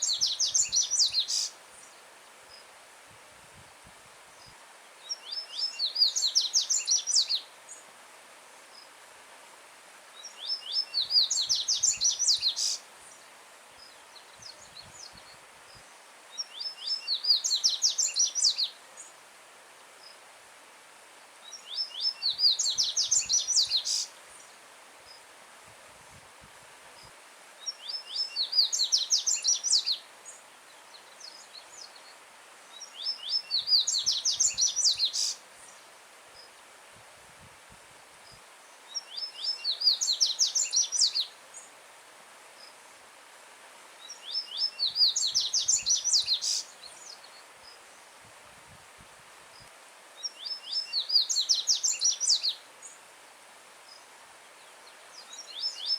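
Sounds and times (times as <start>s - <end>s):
faint stream rushing: 0.0s - 55.9s.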